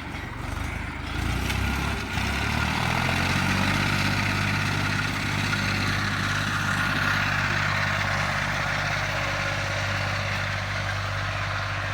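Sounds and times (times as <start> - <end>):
tractor engine running: 0.0 - 11.9.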